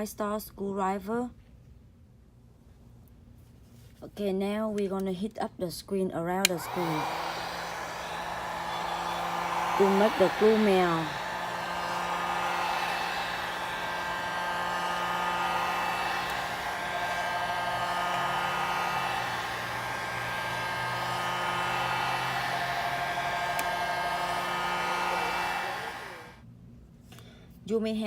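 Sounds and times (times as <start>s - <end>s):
hot-air blower whining: 6.4s - 26.4s.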